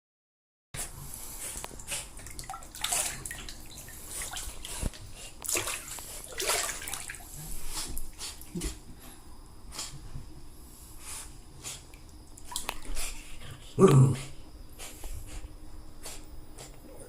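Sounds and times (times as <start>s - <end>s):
bathwater splashing: 1.4s - 8.8s, 11.9s - 13.2s.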